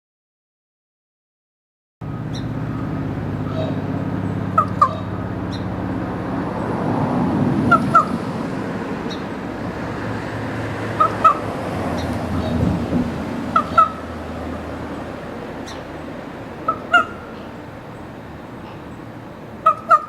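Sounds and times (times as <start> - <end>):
raven squawking: 2.1 - 14.7, 16.6 - 17.9, 19.6 - 20.0.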